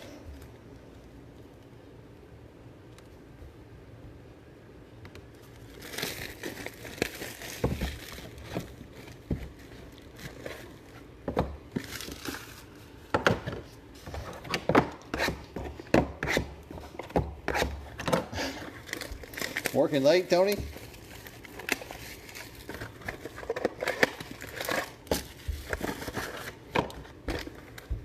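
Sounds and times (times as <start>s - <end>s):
plastic wrap crinkling and tearing: 5.4s - 13.1s, 17.8s - 28.0s.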